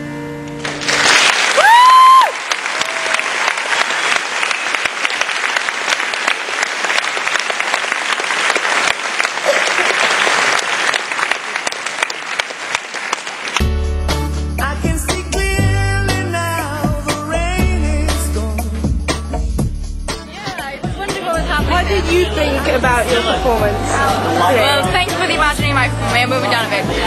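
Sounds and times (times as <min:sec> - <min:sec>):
audience clapping: 0:00.5 - 0:13.8
high-pitched whoop: 0:01.6 - 0:03.2.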